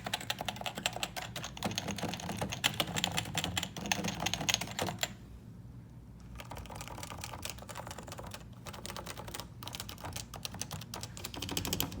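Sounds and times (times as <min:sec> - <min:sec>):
keyboard typing clicks: 0:06.3 - 0:12.0.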